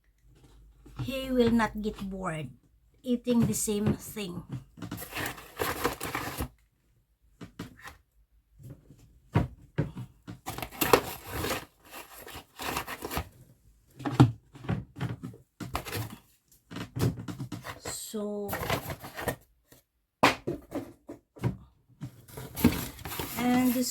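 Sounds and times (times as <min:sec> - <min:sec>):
packaging rustling and tearing: 0:04.9 - 0:06.5, 0:10.5 - 0:13.4, 0:22.3 - 0:23.9.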